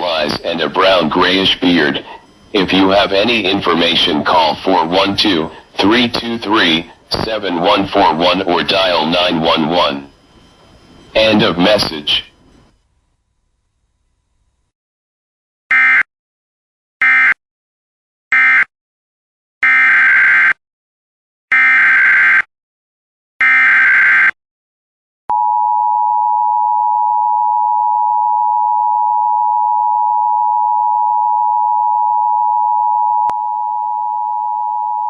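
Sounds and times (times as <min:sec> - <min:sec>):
digital data bursts: 0:00.0 - 0:12.5.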